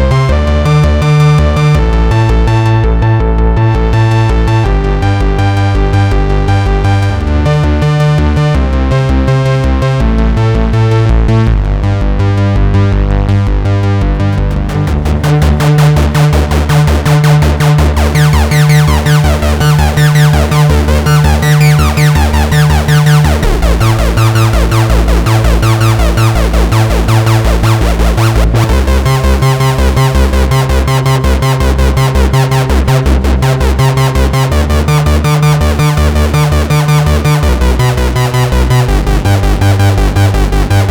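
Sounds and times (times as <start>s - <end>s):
synthesizer bass line: 0.0s - 40.9s
sweeping synth pitch glides: 14.2s - 40.9s.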